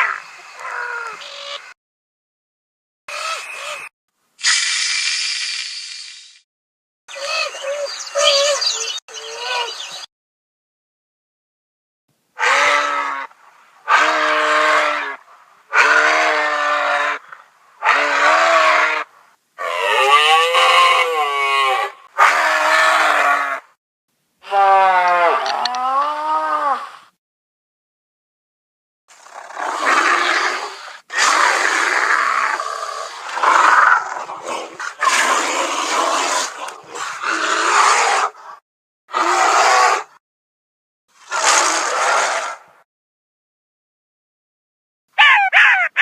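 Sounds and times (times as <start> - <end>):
animal crying: 7.1 - 9.8, 45.2 - 46.0
gruff animal roars: 12.4 - 17.2, 17.8 - 23.7, 29.1 - 38.4, 39.1 - 40.2.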